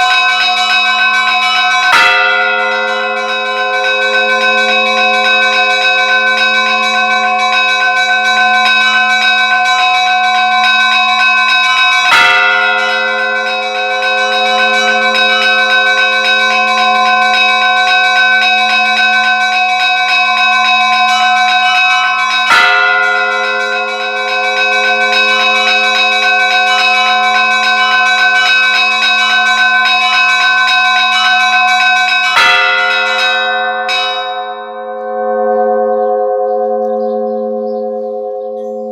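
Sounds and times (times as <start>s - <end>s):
small bells chiming fast: 0.0s - 38.9s
heavy bell striking: 1.0s - 38.9s.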